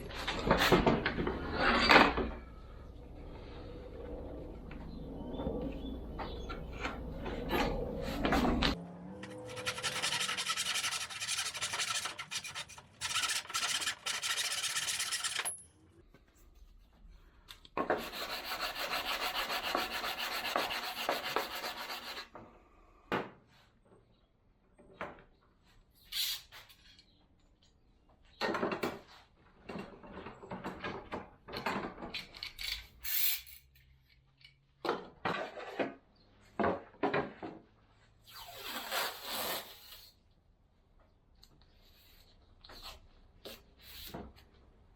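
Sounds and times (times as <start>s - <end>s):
wood being sanded: 9.2s - 15.5s, 18.0s - 22.2s.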